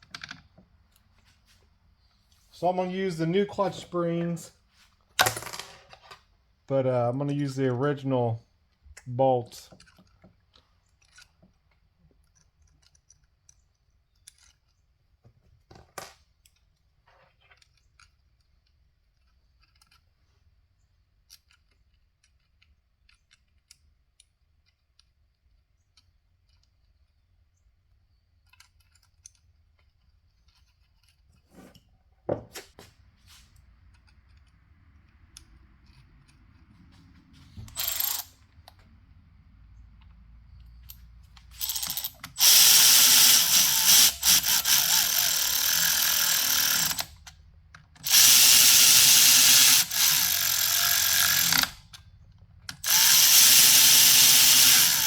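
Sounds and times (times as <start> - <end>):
metallic clicks of small parts: 8.9 - 31.9.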